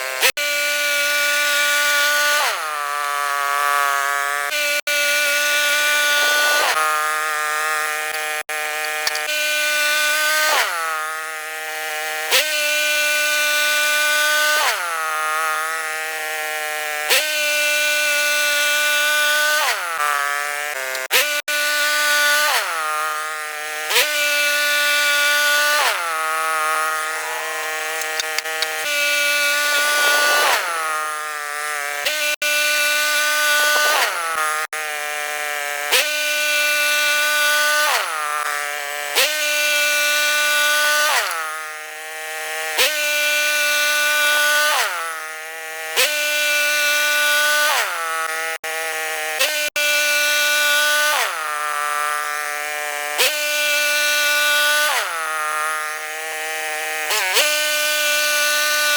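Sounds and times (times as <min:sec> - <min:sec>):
bandsaw mill whine: 0:00.0 - 0:45.6.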